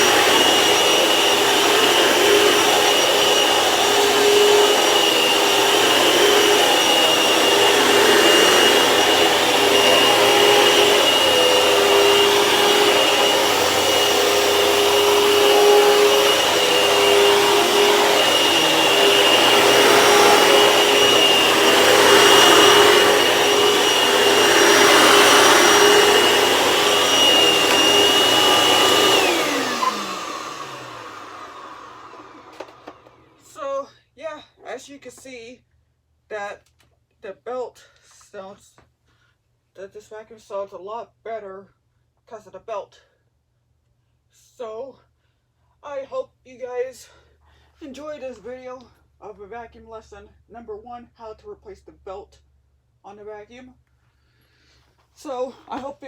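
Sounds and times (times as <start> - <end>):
vacuum cleaner whining: 0.0 - 33.5.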